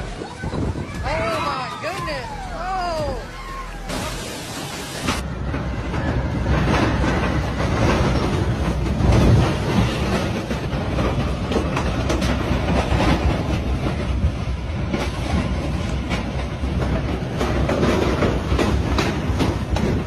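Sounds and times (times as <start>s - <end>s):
strong wind rushing: 0.0s - 20.0s
knocks and rattles: 5.1s - 20.0s.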